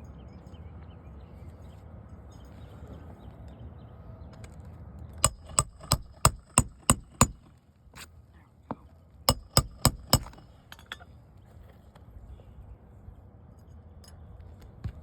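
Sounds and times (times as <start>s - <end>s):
nail driver striking metal: 5.2s - 7.5s, 9.3s - 10.5s.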